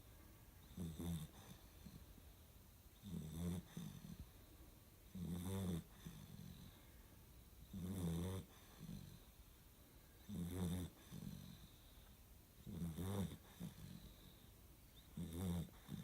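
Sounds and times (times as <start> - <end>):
pet snoring: 0.6 - 2.1, 3.0 - 4.4, 5.1 - 6.8, 7.6 - 9.4, 10.2 - 16.0.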